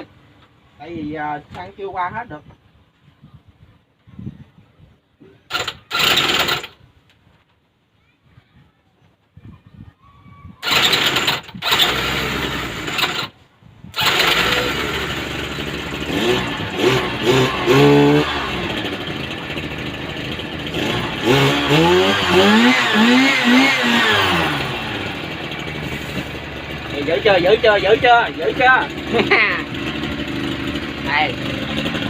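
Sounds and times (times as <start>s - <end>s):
two-stroke engine revving: 5.5s - 6.8s, 10.6s - 13.3s, 13.9s - 32.0s.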